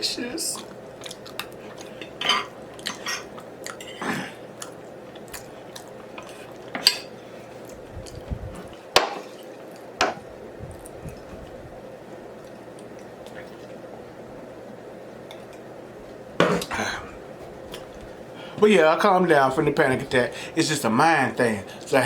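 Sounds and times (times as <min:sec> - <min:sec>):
wet chewing and smacking: 0:00.6 - 0:06.7, 0:07.4 - 0:10.0, 0:10.6 - 0:14.0.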